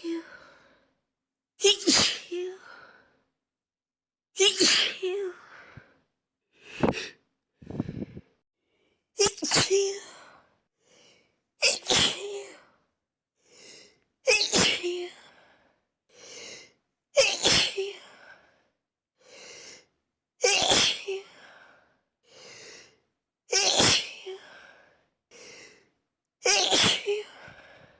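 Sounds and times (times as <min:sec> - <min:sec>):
short in-breath: 0:06.6 - 0:08.3
person sneezing: 0:11.6 - 0:12.3, 0:20.4 - 0:21.1, 0:23.6 - 0:24.2, 0:26.5 - 0:27.1.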